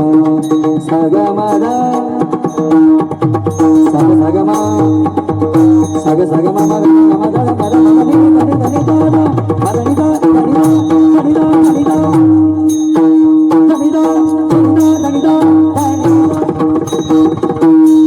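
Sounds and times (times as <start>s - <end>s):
tabla drumming: 0.0s - 18.0s.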